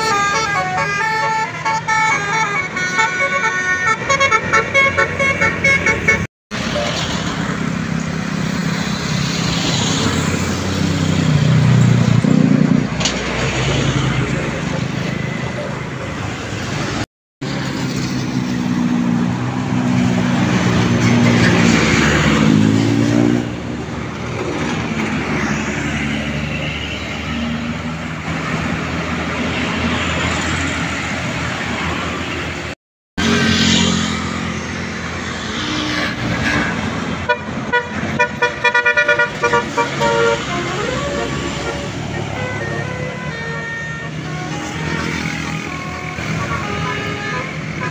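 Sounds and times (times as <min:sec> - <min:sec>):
bus multi-tone horns: 0:00.0 - 0:07.0, 0:35.7 - 0:47.9.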